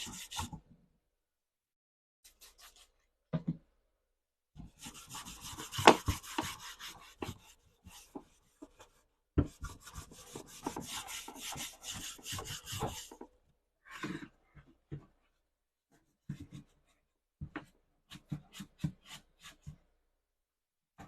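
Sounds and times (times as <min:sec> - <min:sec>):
rubbing strokes on a hard surface: 0:00.0 - 0:00.5, 0:04.6 - 0:13.2.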